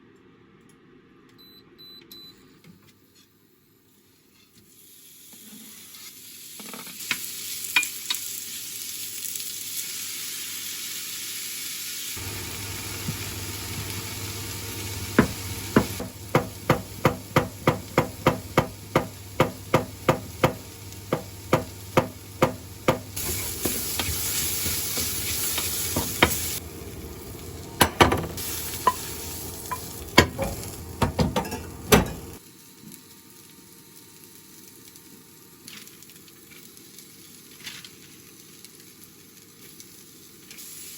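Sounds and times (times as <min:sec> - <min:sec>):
food sizzling in a frying pan: 0:03.9 - 0:40.9
utensil knocking against pan: 0:15.2 - 0:23.1.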